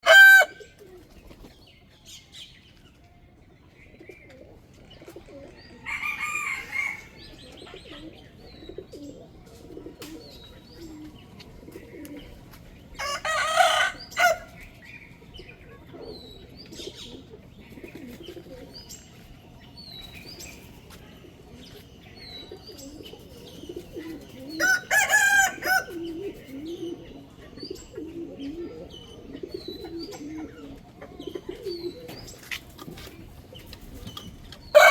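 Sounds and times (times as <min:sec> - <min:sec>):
rooster crowing: 0:00.0 - 0:00.6, 0:05.8 - 0:07.1, 0:13.0 - 0:14.5, 0:24.6 - 0:26.0.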